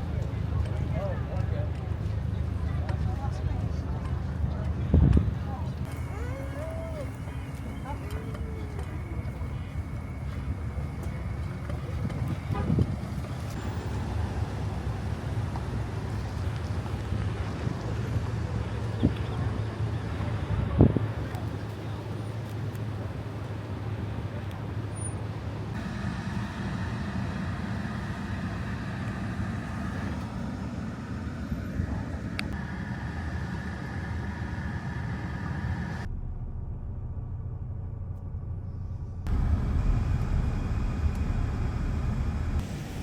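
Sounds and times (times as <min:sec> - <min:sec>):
engine rumble: 0:00.0 - 0:43.0
outdoor background noise: 0:00.0 - 0:43.0
high whine: 0:25.8 - 0:43.0.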